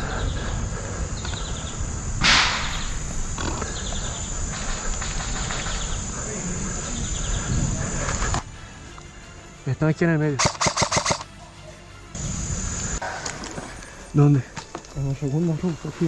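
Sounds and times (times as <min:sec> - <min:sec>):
distant rapid ticks in bursts: 0:10.4 - 0:11.3.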